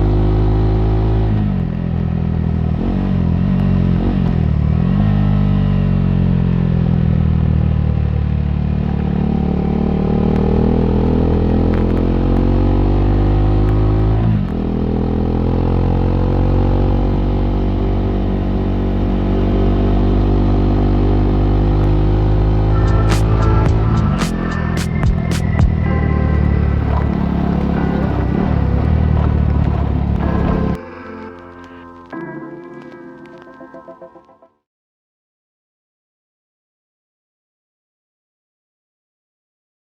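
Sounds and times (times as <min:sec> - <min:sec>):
motorcycle engine revving: 0:00.0 - 0:30.8.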